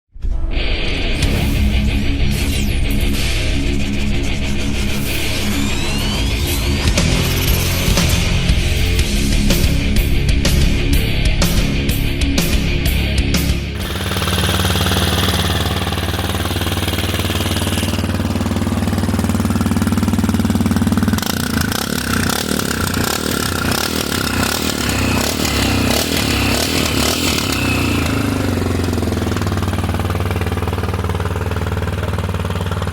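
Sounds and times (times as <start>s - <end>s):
motorcycle engine idling: 13.8s - 32.9s.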